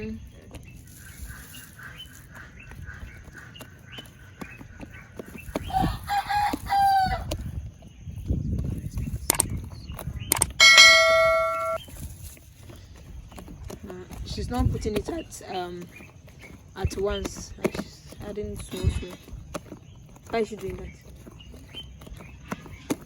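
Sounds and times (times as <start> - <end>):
rooster crowing: 5.7 - 7.3.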